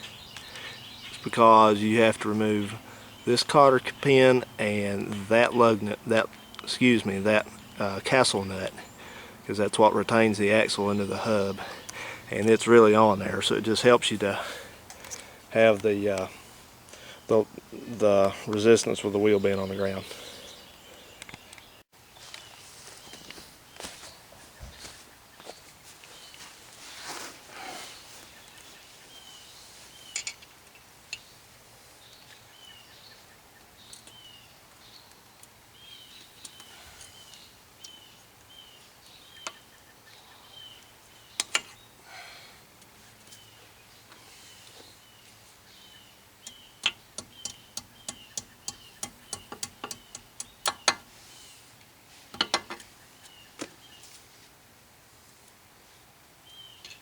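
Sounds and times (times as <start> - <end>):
small bird chirping: 43.3 - 51.6.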